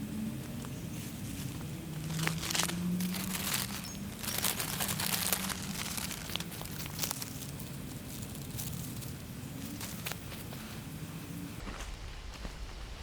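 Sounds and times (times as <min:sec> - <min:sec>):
crinkling and rustling: 0:00.5 - 0:10.8.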